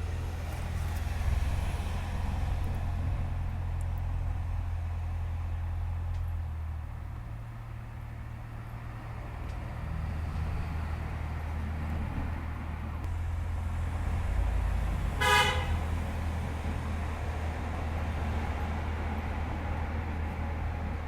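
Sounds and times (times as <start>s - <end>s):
low traffic rumble: 0.0s - 21.0s
car horn toot: 15.2s - 15.9s.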